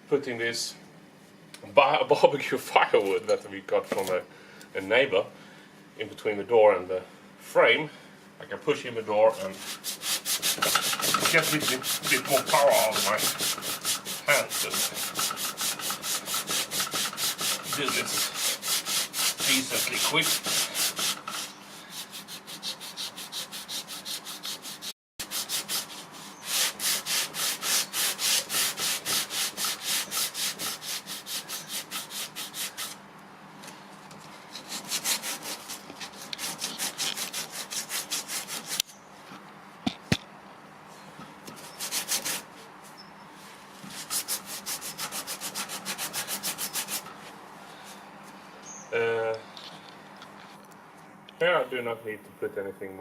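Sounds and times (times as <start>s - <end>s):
sandpaper rubbing on wood: 9.4s - 33.0s, 34.5s - 38.8s, 41.6s - 42.5s, 43.8s - 47.1s.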